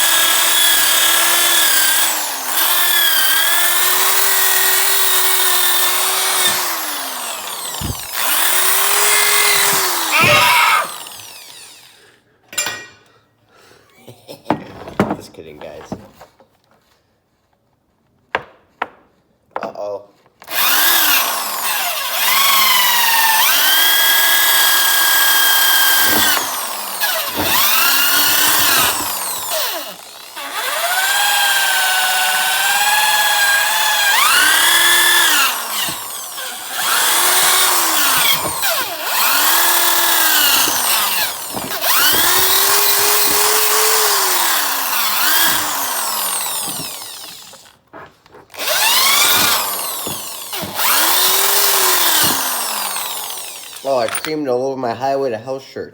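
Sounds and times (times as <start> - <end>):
power tool motor whining: 0.0 - 12.0, 20.4 - 54.4.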